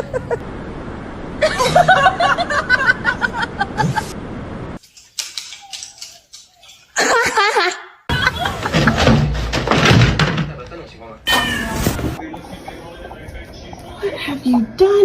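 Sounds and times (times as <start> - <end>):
person laughing: 0.0 - 0.4, 1.4 - 4.1.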